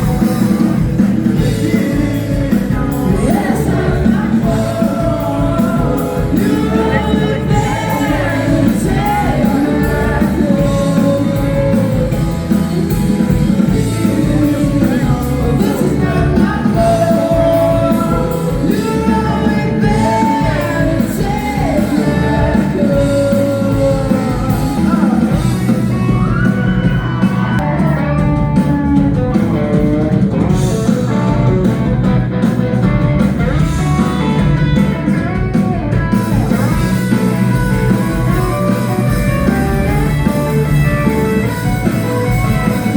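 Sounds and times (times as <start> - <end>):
person singing: 0.0 - 29.8
electric guitar: 0.0 - 42.9
rock band playing live: 0.0 - 42.9.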